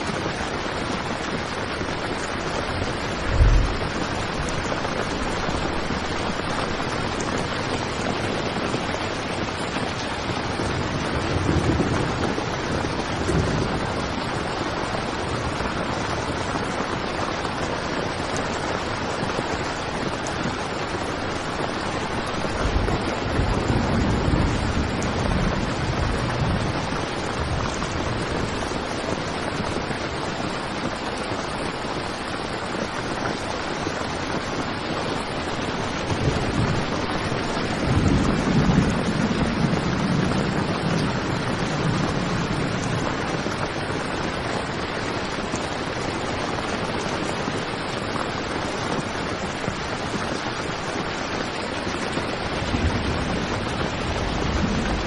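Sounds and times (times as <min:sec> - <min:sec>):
heavy rain on a tent: 0:00.0 - 0:55.0
low rumble: 0:03.2 - 0:04.6.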